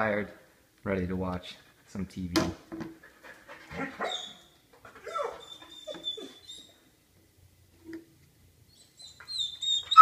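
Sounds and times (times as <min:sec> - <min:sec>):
dog whimpering and whining: 0:03.7 - 0:06.9, 0:08.7 - 0:10.0.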